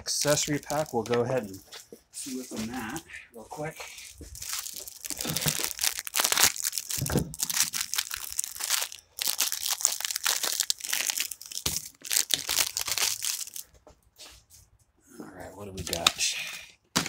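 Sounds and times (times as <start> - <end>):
plastic wrapping crinkling: 0.0 - 3.0, 4.1 - 13.8.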